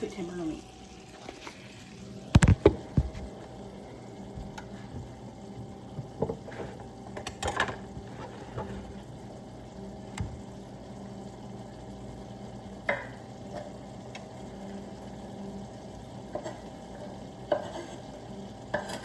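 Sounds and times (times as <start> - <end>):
meat and onions sizzling in skillet: 0.0 - 7.2.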